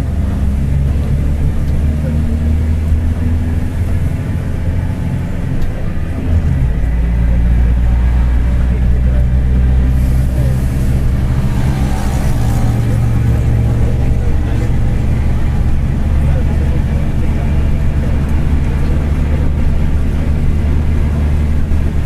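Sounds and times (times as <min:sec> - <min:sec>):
diesel bus engine running: 0:00.0 - 0:22.0
driveshaft growl: 0:06.3 - 0:22.0.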